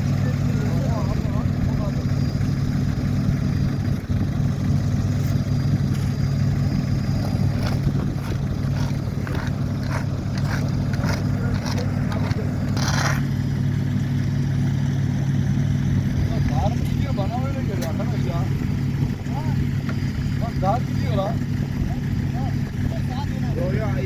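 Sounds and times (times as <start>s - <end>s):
heavy diesel engine running: 0.0s - 24.0s
scrapes and knocks: 7.2s - 13.3s.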